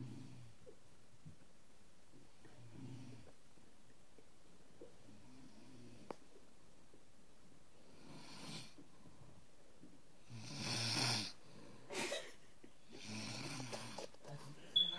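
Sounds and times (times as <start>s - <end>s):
person snoring: 10.3s - 11.4s, 12.9s - 14.0s.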